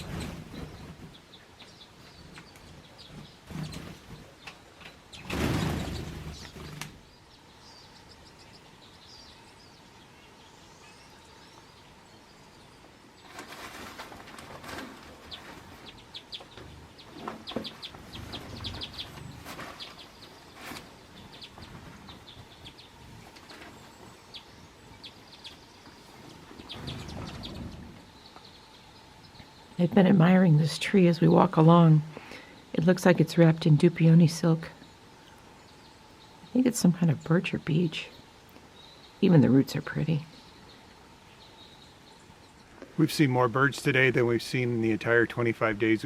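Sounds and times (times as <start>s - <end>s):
rustling: 0.0s - 7.1s, 13.2s - 24.3s, 25.0s - 28.6s
songbirds chirping: 0.0s - 46.0s.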